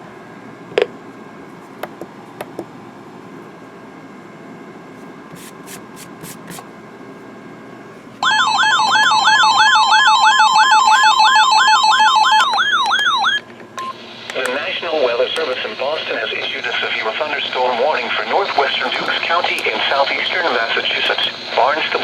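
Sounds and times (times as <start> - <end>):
faint radio hiss: 14.3 - 22.0.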